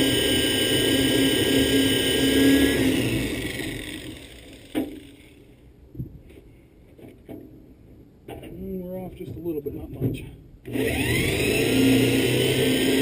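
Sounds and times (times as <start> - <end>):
electric drill boring into steel: 0.0 - 5.1, 10.7 - 13.0.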